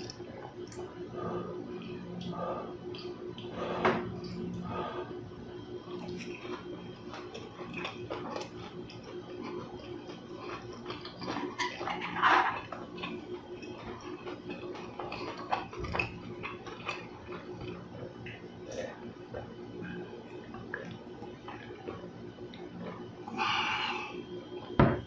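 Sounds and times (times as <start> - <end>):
faint steady hum: 0.0 - 25.0
chewing: 5.9 - 23.6.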